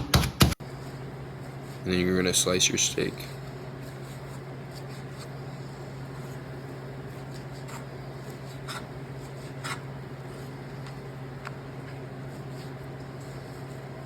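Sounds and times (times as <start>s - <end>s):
steady low hum: 0.0s - 14.0s
knife scraping cutting board: 7.1s - 11.0s.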